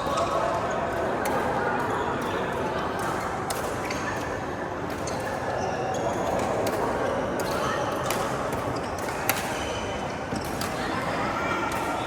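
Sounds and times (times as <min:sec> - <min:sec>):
background chatter: 0:00.0 - 0:12.0
sneaker squeaks: 0:05.0 - 0:06.6.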